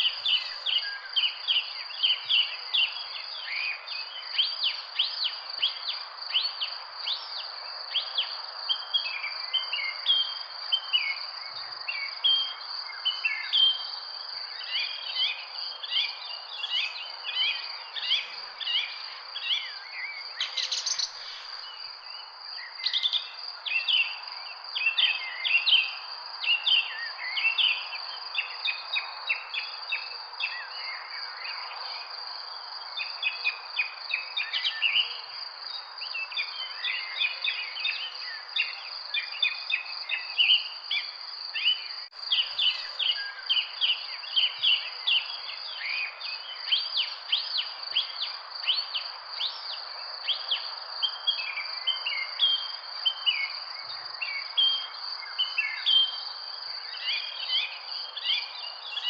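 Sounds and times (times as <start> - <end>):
steady background hiss: 0.0 - 27.9, 39.4 - 53.5
insect trill: 0.0 - 59.0
birds chirping: 42.2 - 43.7.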